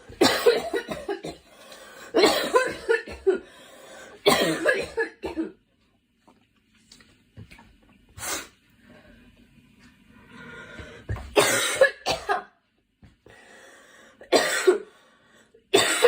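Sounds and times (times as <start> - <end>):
girl coughing: 0.1 - 1.5, 2.1 - 3.4, 4.2 - 5.6, 11.3 - 12.6, 14.3 - 14.9, 15.8 - 16.0
faint breaths: 10.1 - 11.1, 13.2 - 14.3.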